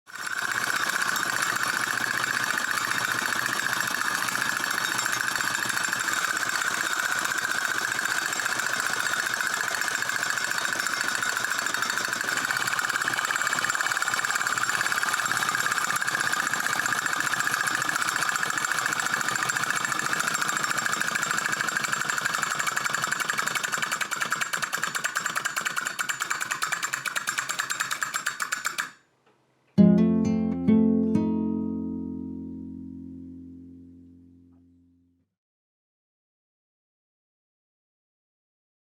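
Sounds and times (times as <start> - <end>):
clockwork mechanism rattling: 0.1 - 29.0.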